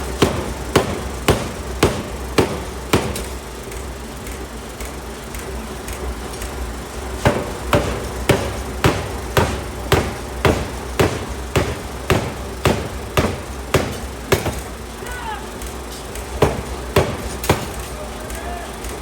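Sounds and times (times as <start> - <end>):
forging hammer striking steel: 0.0 - 3.4, 7.2 - 14.9, 16.2 - 18.0
low machine hum: 0.0 - 19.0.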